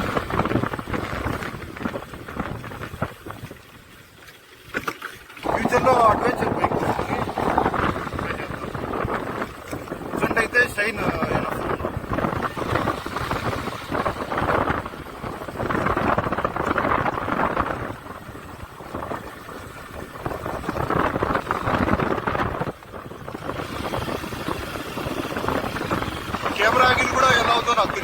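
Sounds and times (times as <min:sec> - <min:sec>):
wind noise on microphone: 0:00.0 - 0:28.0
motorcycle engine running: 0:11.7 - 0:27.2.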